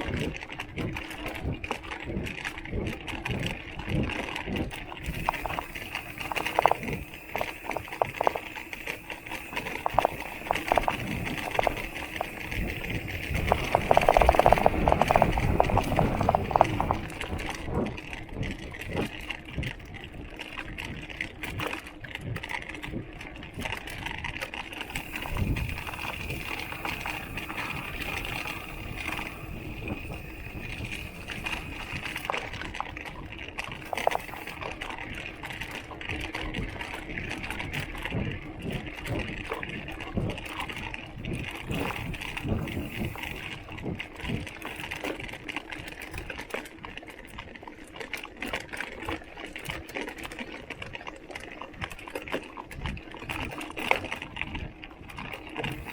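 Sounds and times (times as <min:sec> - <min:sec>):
bike tyre and trail noise: 0:00.0 - 0:55.9.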